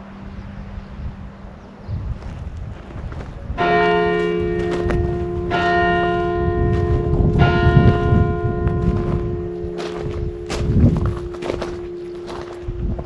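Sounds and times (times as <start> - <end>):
wind rumbling on microphone: 0.0 - 13.0
church bell ringing: 3.6 - 13.0.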